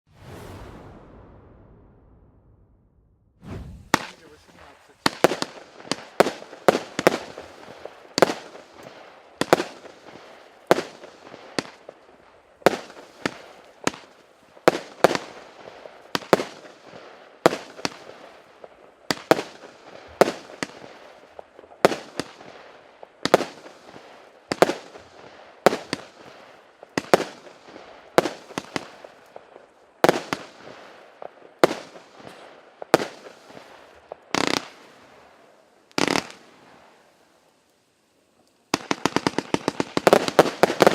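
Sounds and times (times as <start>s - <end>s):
firework crackle: 3.4s - 40.9s.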